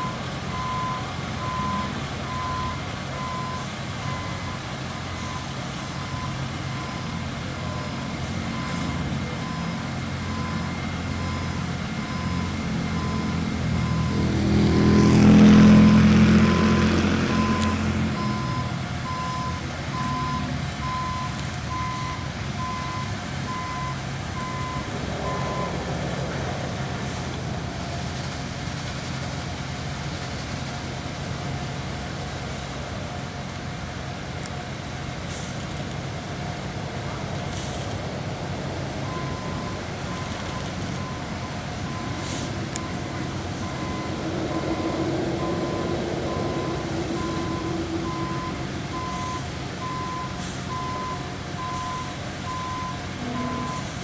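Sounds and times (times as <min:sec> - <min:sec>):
truck reversing alarm beeping: 0:00.0 - 0:29.6, 0:37.3 - 0:54.0
diesel engine running: 0:00.0 - 0:54.0.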